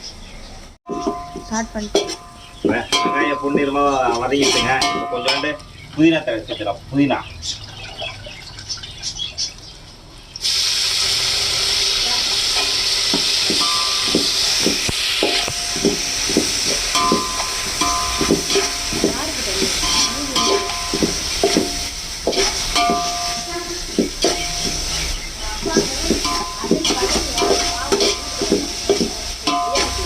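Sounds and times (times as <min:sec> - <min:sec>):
spoon scraping a pan: 0:00.9 - 0:05.8, 0:12.5 - 0:30.0
loud sizzle in hot oil: 0:00.9 - 0:07.6, 0:10.2 - 0:30.0.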